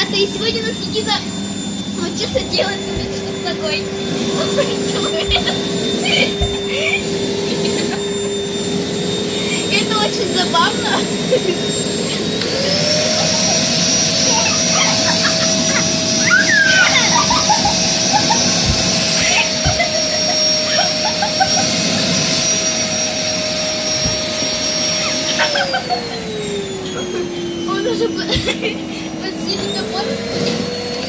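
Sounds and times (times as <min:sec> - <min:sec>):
vacuum cleaner motor whine: 0:00.0 - 0:31.0.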